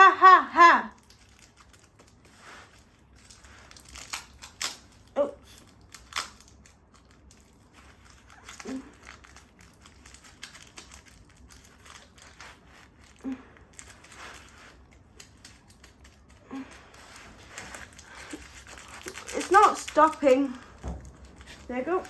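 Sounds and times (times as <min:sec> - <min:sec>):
washing machine clattering and crunching: 0:15.0 - 0:22.0.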